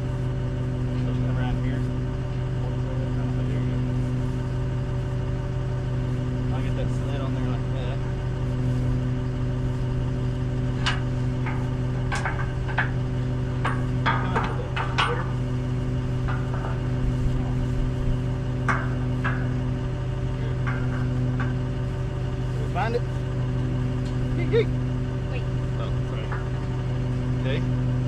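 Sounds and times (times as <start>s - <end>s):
engine hum: 0.0s - 28.0s
metal parts clanking: 10.7s - 22.2s.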